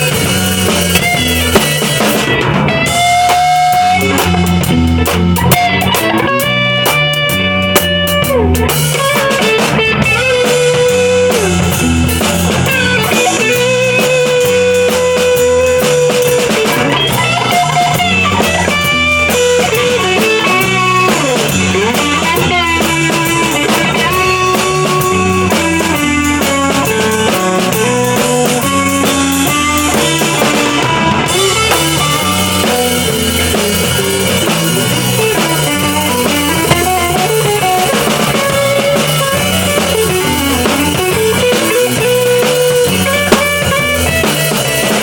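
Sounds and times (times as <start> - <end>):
drum kit: 0.0 - 45.0
electric guitar lead notes: 0.0 - 45.0
looped bass and chords: 0.0 - 45.0.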